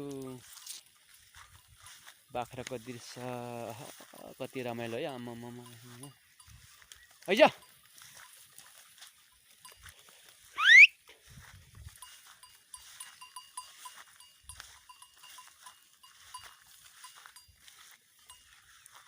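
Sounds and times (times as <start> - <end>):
goat bells tinkling: 0.0 - 19.0
loud rising whistle: 10.6 - 10.9.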